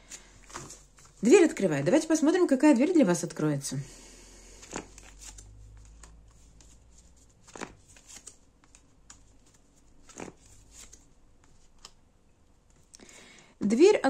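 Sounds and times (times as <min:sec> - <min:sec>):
cards flicked and tapped: 0:07.4 - 0:12.0.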